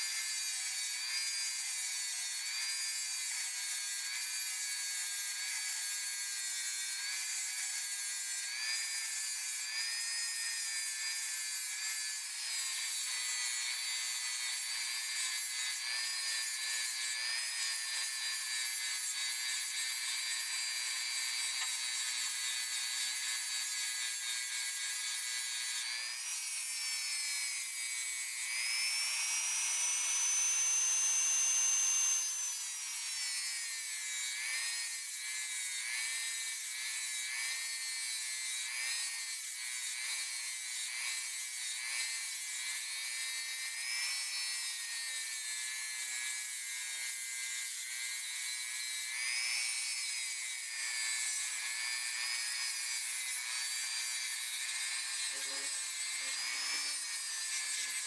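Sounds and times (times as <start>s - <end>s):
rotary tool whining on metal: 11.4s - 37.8s, 46.0s - 58.0s.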